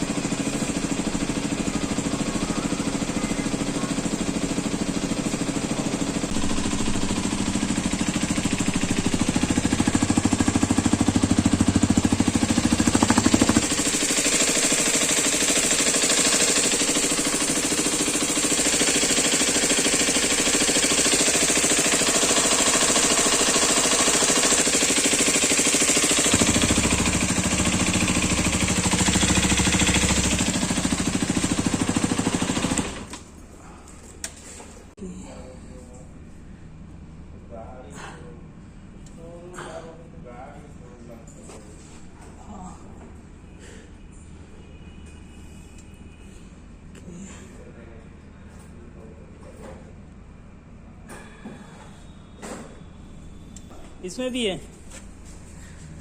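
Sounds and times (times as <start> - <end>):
motorcycle engine knocking: 0.0 - 33.1.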